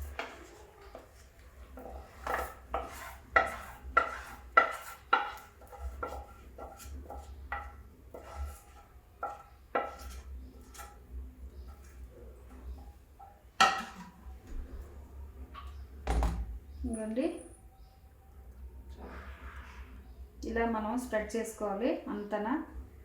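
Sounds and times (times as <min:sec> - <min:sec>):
spoon scraping a pan: 0:00.0 - 0:14.2.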